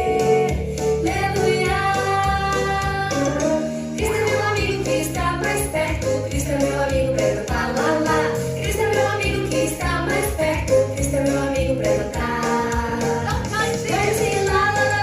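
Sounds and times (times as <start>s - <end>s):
upbeat children's song: 0.0s - 15.0s.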